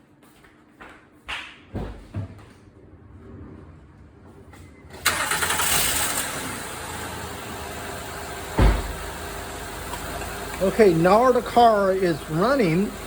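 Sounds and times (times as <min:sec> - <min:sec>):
car engine starting and idling: 0:02.9 - 0:13.0
short thump: 0:08.6 - 0:09.1.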